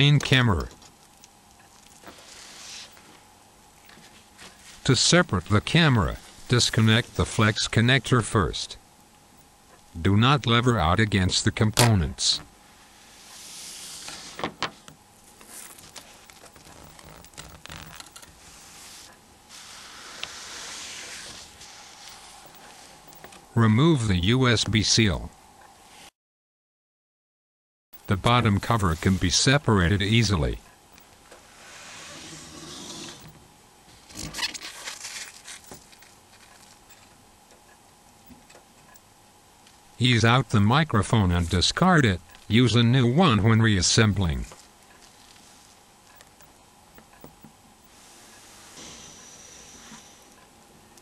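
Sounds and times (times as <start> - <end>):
steady hiss: 0.0 - 26.1, 28.0 - 51.0
plastic parts clicking and scraping: 15.4 - 18.4.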